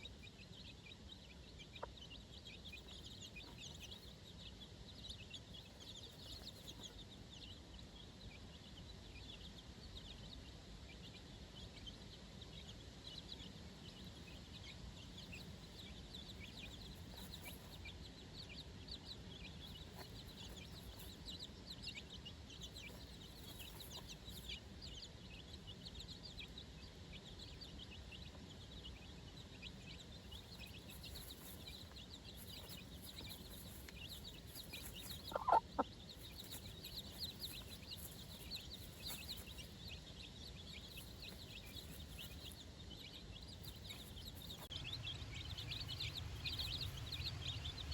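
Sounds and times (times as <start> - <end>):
chicks peeping: 0.0 - 47.9.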